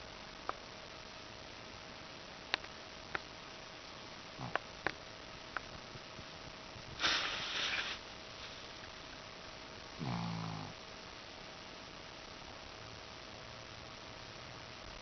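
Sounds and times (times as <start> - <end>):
dog snuffling through nose: 7.0 - 8.0.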